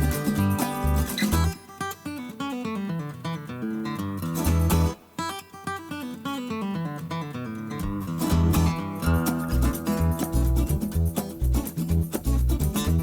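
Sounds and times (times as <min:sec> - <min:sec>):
bass beat: 0:00.0 - 0:01.5, 0:07.8 - 0:13.0
acoustic guitar playing: 0:00.0 - 0:13.0.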